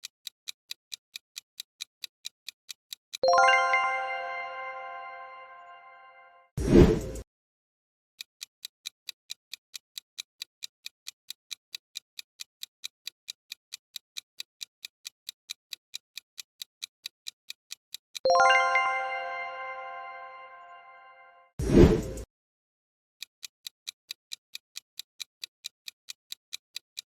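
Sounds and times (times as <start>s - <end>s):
clock ticking: 0.0s - 5.7s, 8.4s - 20.6s, 23.2s - 27.0s
bright chime: 3.2s - 6.5s, 18.3s - 21.5s.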